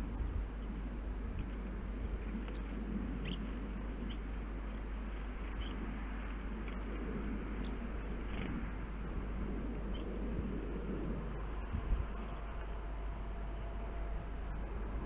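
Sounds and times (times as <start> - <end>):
small birds chirping: 0.0 - 8.7, 9.4 - 12.8, 13.5 - 14.9
steady low rumble: 0.0 - 15.0.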